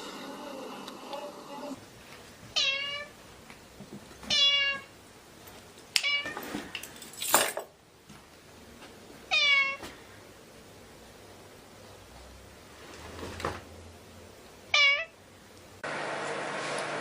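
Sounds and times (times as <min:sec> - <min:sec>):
kitten meowing: 0:02.6 - 0:03.1, 0:04.3 - 0:04.8, 0:14.8 - 0:15.1.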